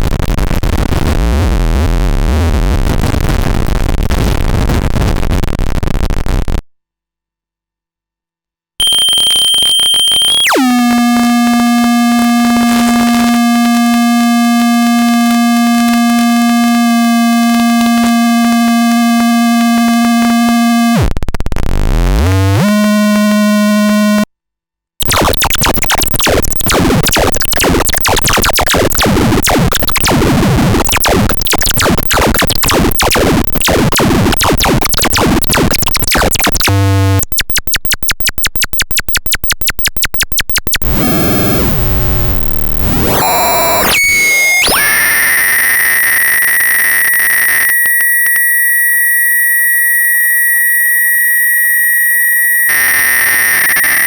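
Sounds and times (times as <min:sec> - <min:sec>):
dense crackling noise: 0:00.0 - 0:06.7, 0:20.9 - 0:24.2, 0:25.0 - 0:44.8
high electronic whistle: 0:08.8 - 0:11.4, 0:25.0 - 0:41.6, 0:42.3 - 0:54.0
buzzy pitched tones: 0:10.3 - 0:24.3, 0:25.0 - 0:44.8
fast electronic pulsing: 0:25.0 - 0:44.8.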